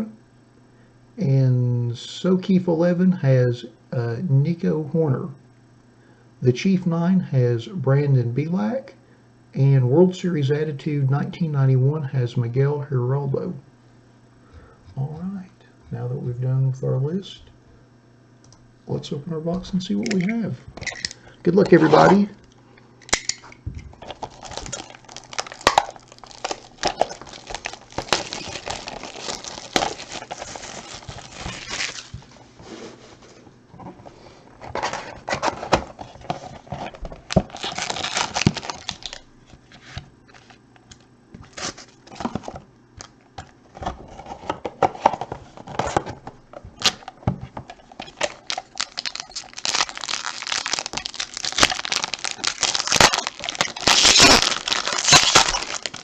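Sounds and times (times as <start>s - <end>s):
card packaging tearing: 21.6s - 22.3s, 24.0s - 32.2s, 34.7s - 40.6s, 47.8s - 56.0s
wrappers crinkling: 23.9s - 33.2s, 34.7s - 40.6s, 41.4s - 42.3s, 47.7s - 56.0s.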